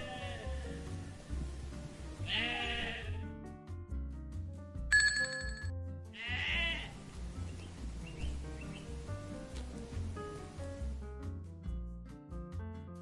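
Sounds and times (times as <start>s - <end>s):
background music: 0.0s - 13.0s
short ringing tone: 4.9s - 5.7s.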